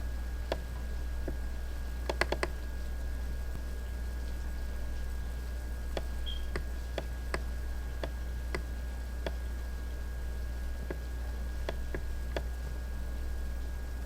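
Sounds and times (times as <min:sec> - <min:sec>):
low electrical hum: 0:00.0 - 0:14.0
computer mouse clicking: 0:02.0 - 0:02.5.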